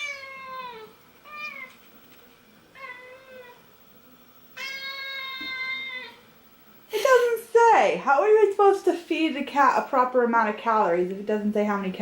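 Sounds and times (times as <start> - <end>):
cat meowing: 0.0 - 1.8, 2.8 - 3.7, 4.6 - 6.2.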